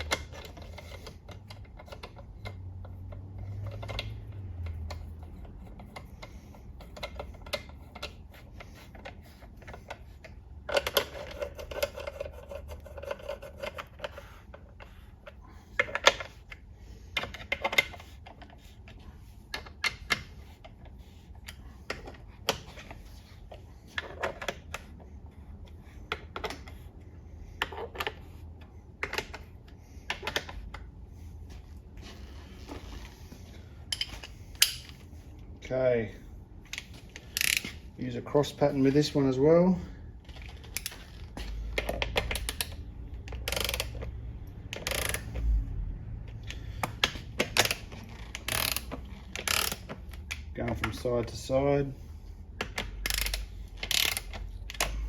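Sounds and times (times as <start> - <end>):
ratchet clicking: 37.2 - 37.8, 41.9 - 44.1, 44.7 - 45.4, 46.9 - 49.9, 52.8 - 55.0.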